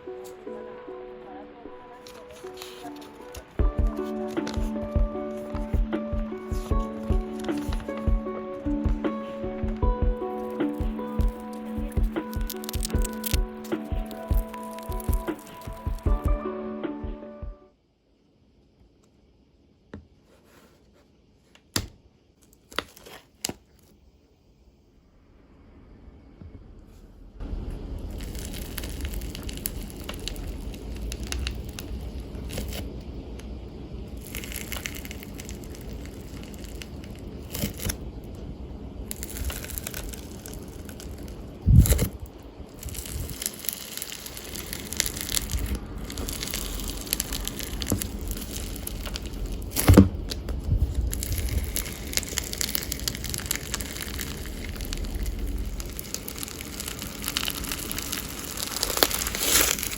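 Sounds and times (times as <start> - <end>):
slime crackling and popping: 2.0 - 16.3, 22.5 - 23.9, 28.0 - 33.5, 34.1 - 38.4, 39.0 - 59.9
dull thumps: 49.7 - 51.1.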